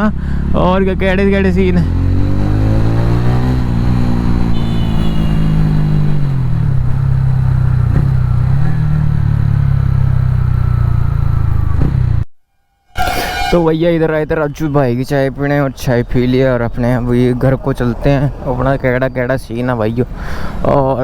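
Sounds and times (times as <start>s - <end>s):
motorcycle engine running: 2.4s - 12.2s.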